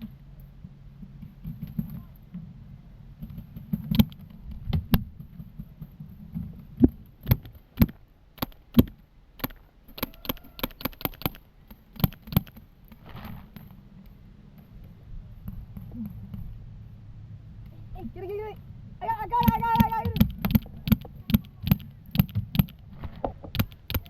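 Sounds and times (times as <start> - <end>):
paintball markers firing: 7.2 - 12.6, 19.4 - 22.8, 23.5 - 24.0.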